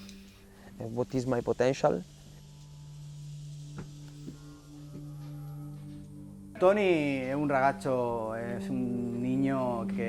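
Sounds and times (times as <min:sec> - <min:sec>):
faint ticks: 0:00.0 - 0:00.5
quiet background music: 0:00.0 - 0:10.0.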